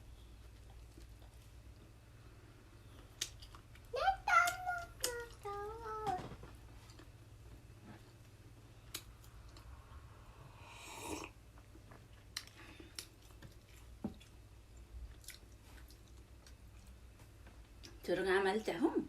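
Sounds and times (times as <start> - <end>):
chewing and eating: 0.2 - 2.0, 2.8 - 5.7, 6.7 - 8.2, 11.6 - 18.0.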